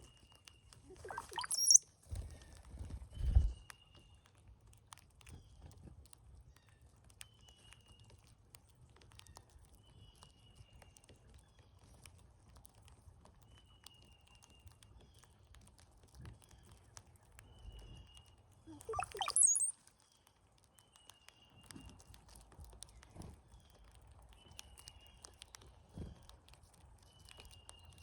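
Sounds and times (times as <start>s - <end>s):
faint bird whistle: 0.9s - 1.8s, 18.7s - 19.7s
light clicks and ticks: 3.6s - 28.0s.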